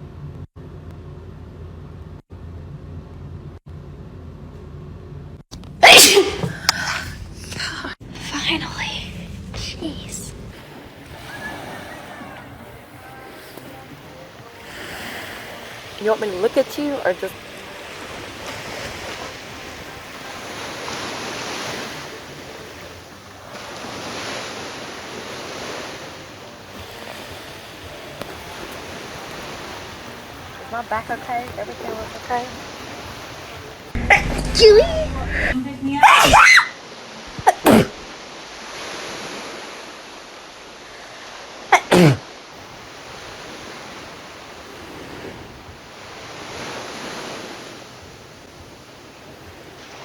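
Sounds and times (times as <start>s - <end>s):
woman sneezing: 5.8s - 7.7s, 37.4s - 38.0s, 41.8s - 42.2s
ocean surf washing ashore: 6.7s - 50.0s.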